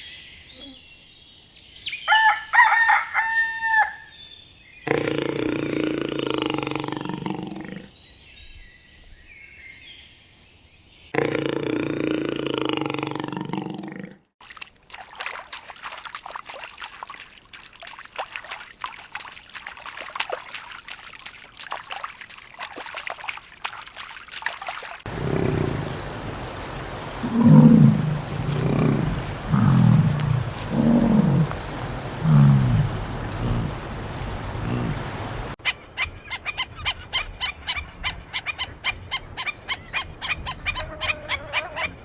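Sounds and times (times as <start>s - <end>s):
farm animal long low call: 25.1s - 35.6s
farm animal short low calls: 25.1s - 35.6s.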